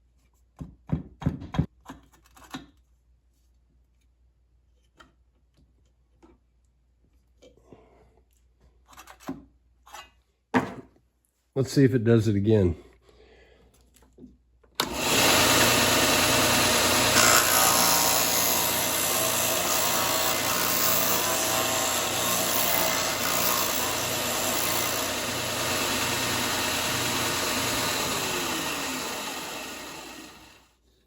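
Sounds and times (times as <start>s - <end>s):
sander motor running: 14.8s - 30.6s.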